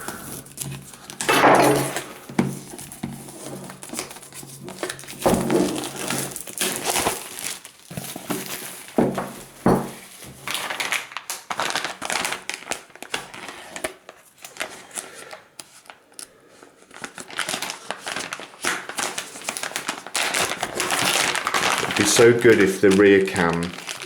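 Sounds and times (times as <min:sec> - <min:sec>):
packaging crinkling: 0:00.0 - 0:01.3, 0:02.0 - 0:16.2, 0:16.8 - 0:24.0.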